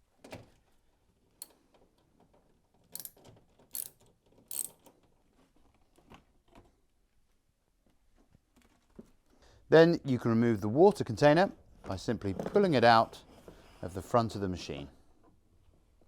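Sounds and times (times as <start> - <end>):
socket wrench ratchet clicks: 3.0 - 4.8.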